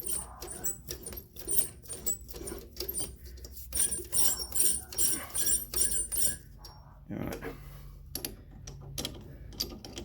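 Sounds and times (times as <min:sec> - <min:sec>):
metallic clicks and squeaks of tap: 0:00.0 - 0:06.8.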